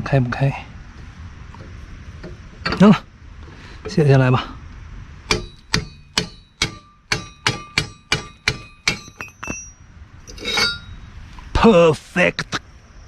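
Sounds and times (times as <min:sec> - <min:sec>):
hammer striking steel: 0:05.3 - 0:11.0.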